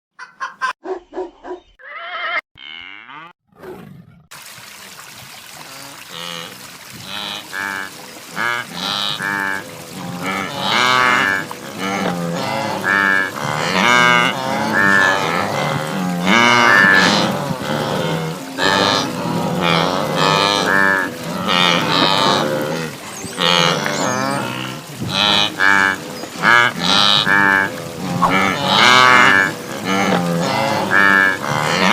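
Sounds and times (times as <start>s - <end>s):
wildebeest herd calling: 7.1s - 31.9s.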